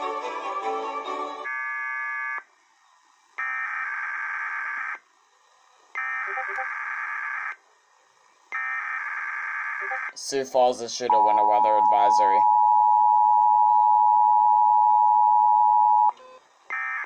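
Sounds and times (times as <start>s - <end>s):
string music: 0.0s - 1.5s
shrill digital data tones: 6.2s - 6.7s, 9.8s - 10.2s.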